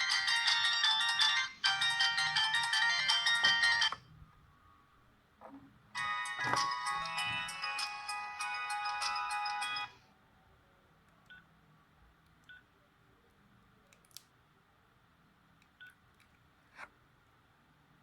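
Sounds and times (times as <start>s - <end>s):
phone ringtone melody: 0.0s - 4.0s, 6.0s - 10.0s.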